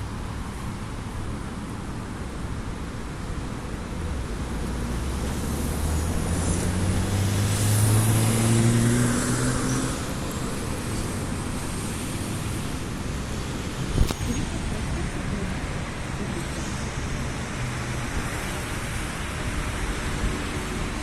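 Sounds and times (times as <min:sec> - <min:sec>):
steady traffic noise: 0:00.0 - 0:21.0
vehicle driving past: 0:04.9 - 0:10.4.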